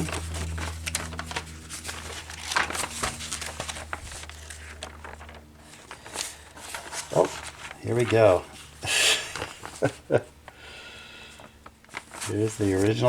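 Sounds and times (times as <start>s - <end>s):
low hum: 0.0s - 9.8s
paper and plastic bag rustling: 0.0s - 13.0s.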